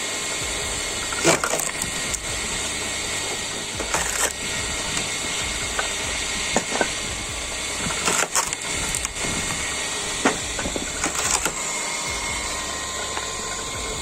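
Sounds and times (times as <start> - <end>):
log splitter machine running: 0.0 - 14.0
wood cracking and splitting: 0.8 - 11.6.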